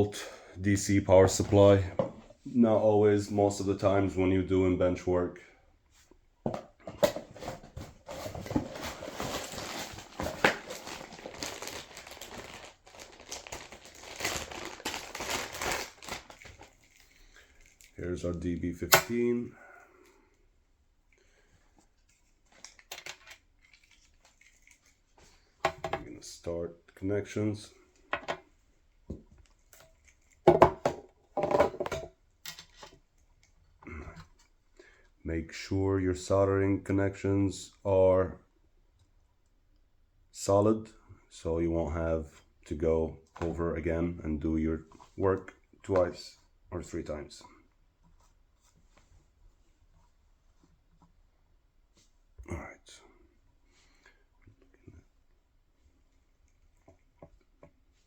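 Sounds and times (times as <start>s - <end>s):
crinkling rustling cable handling: 6.9s - 18.5s, 21.4s - 26.0s.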